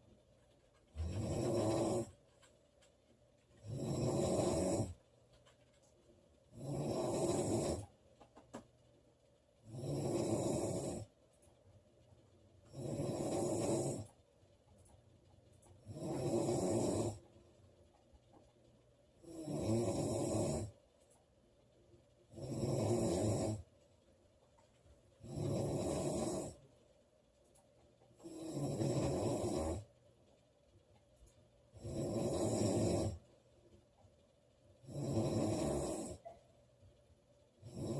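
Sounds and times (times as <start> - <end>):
woman snoring: 1.0 - 2.2, 3.6 - 5.0, 6.5 - 7.8, 9.6 - 11.1, 12.7 - 14.1, 15.8 - 17.2, 19.2 - 20.7, 22.3 - 23.6, 25.2 - 26.6, 28.2 - 29.9, 31.8 - 33.2, 34.8 - 36.2, 37.6 - 37.9.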